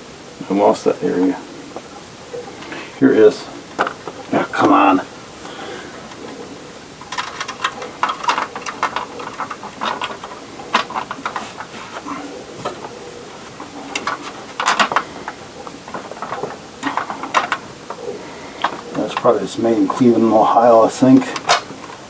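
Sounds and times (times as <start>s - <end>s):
vacuum parts clicking and rattling: 7.0s - 22.0s.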